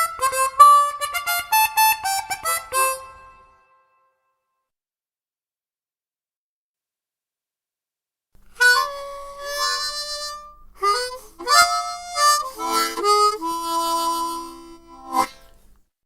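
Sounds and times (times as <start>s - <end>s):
harmonica playing chords: 0.0s - 4.0s, 8.5s - 15.6s.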